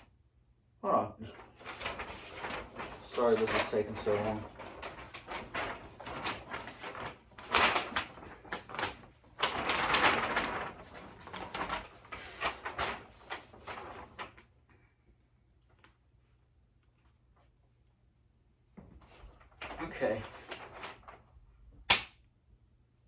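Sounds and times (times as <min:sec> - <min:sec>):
fabric rustling: 0:01.4 - 0:14.6, 0:19.0 - 0:21.3.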